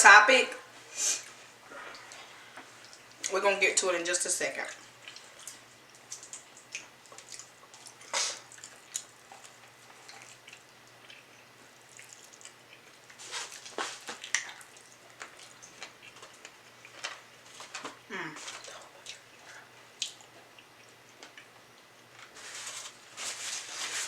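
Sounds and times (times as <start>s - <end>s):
wet chewing and lip-smacking: 5.0s - 17.4s, 18.6s - 22.0s.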